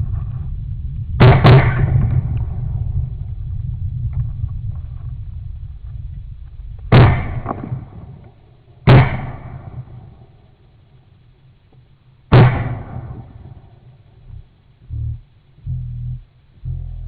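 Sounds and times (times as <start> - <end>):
low rumble: 0.0 - 11.7, 12.3 - 17.0
shotgun shots: 1.2 - 2.6, 6.9 - 8.2, 8.8 - 10.3, 12.3 - 13.6.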